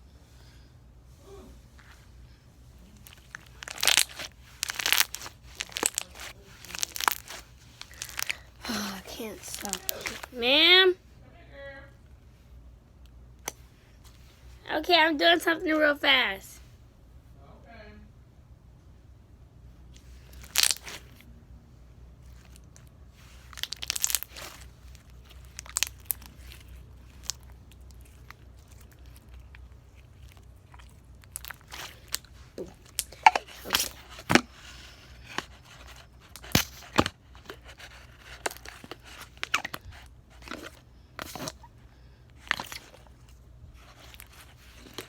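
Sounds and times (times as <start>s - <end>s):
slime crackling and popping: 3.0s - 10.4s, 20.3s - 21.2s, 22.3s - 41.7s, 42.3s - 45.0s.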